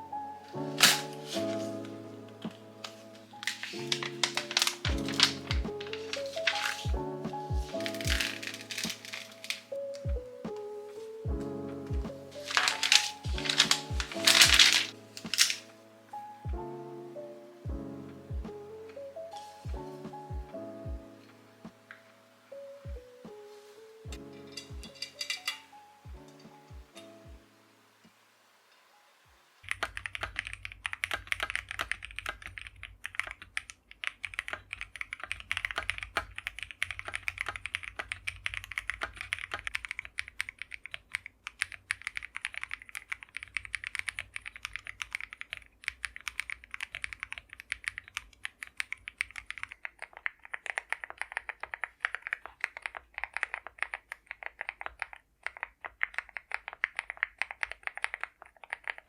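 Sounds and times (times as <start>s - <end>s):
fast mechanical keyboard typing: 3.4s - 6.9s, 7.6s - 9.6s, 12.4s - 15.6s, 29.6s - 59.0s.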